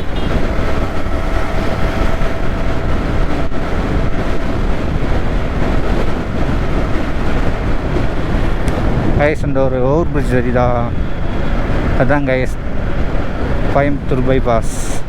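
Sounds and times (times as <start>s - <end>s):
motorcycle engine running: 0.0s - 8.6s
road noise: 0.0s - 15.0s
wind buffeting microphone: 0.0s - 15.0s.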